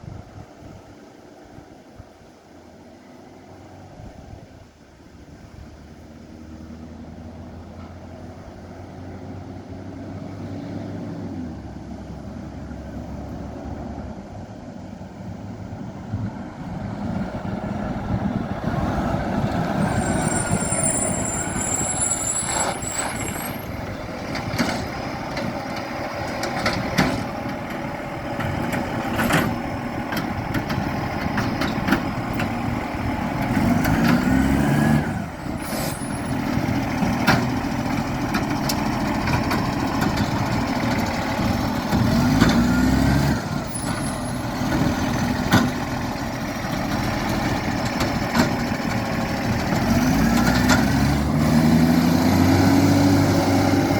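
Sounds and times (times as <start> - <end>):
garbage truck engine running: 15.1 - 53.9.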